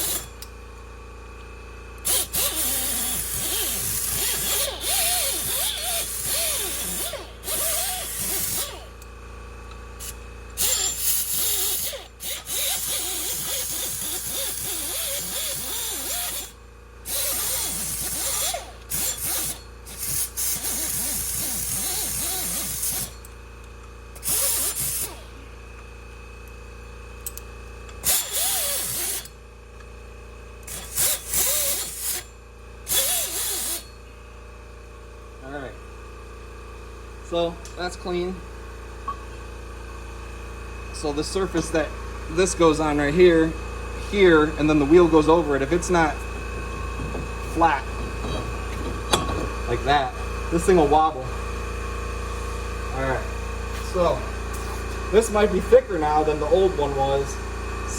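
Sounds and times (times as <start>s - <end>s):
power tool scrubbing rust: 0.0s - 0.3s, 2.0s - 9.0s, 10.0s - 23.2s, 24.2s - 25.4s, 28.0s - 29.3s, 30.7s - 32.3s, 32.9s - 33.9s, 41.3s - 51.2s.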